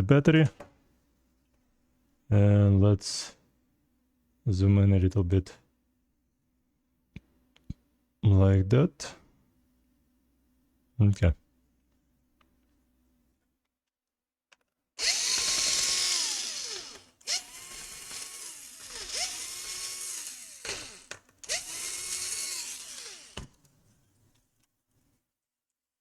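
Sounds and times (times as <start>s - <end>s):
electric screwdriver motor whine: 15.0s - 23.6s.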